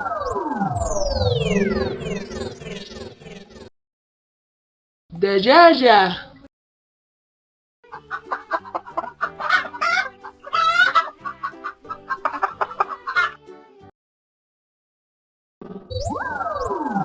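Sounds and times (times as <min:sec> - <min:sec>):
chickens clucking: 0:07.9 - 0:13.4.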